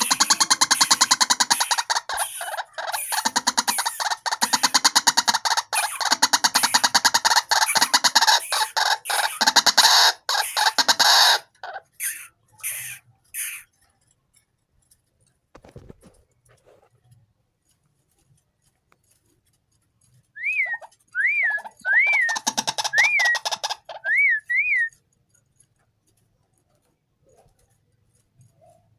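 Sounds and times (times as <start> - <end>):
waterhen harsh croaking calls: 0.0 - 13.8, 20.4 - 24.9.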